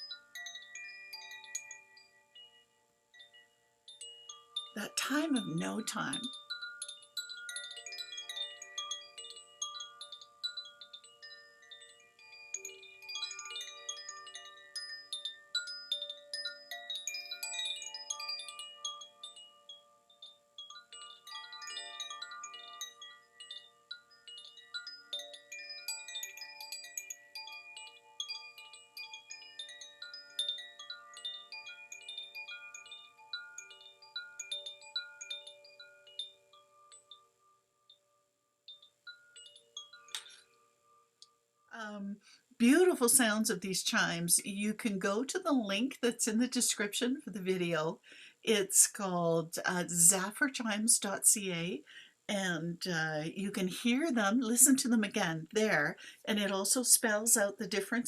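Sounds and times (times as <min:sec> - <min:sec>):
wind chime ringing: 0:00.0 - 0:43.4.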